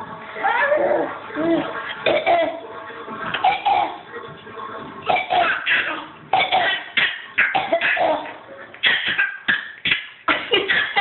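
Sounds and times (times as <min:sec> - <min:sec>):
people coughing: 0:02.0 - 0:02.6, 0:03.4 - 0:04.0, 0:05.1 - 0:11.0.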